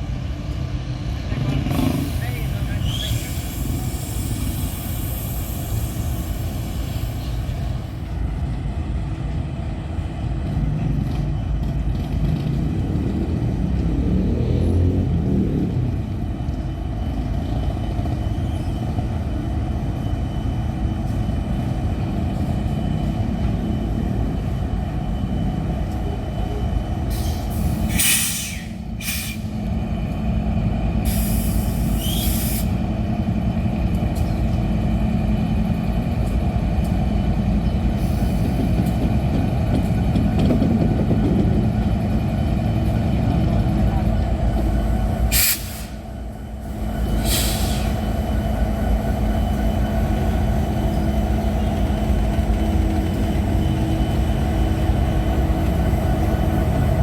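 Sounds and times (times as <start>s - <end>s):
diesel locomotive rumble: 0.0s - 57.0s
air brakes hissing: 1.9s - 8.0s, 27.1s - 29.6s, 31.0s - 32.8s, 37.9s - 38.8s, 45.2s - 50.6s.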